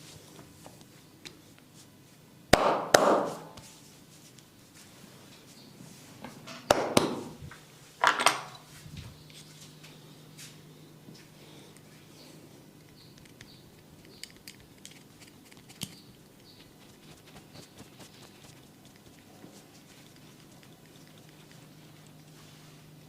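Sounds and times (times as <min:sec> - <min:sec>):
faint steady hum: 0:00.0 - 0:23.0
sharp hand slaps: 0:02.6 - 0:03.7, 0:06.7 - 0:07.3
small quiet clicks: 0:12.8 - 0:16.5.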